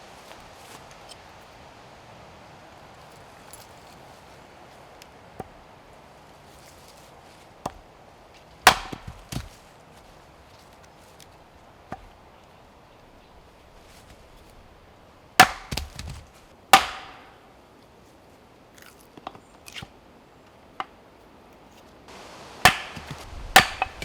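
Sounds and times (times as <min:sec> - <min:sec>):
firewood being chopped: 0:07.4 - 0:12.2, 0:15.4 - 0:17.4, 0:22.6 - 0:24.0.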